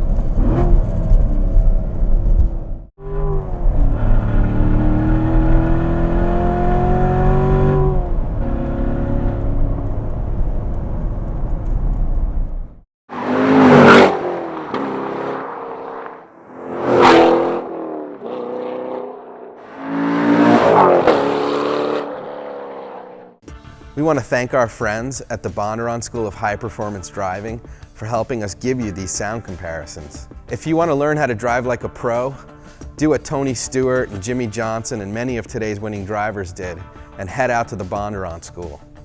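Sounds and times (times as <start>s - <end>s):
sports car engine revving: 0.1s - 11.0s, 13.1s - 23.4s
car passing by fast: 13.1s - 23.4s.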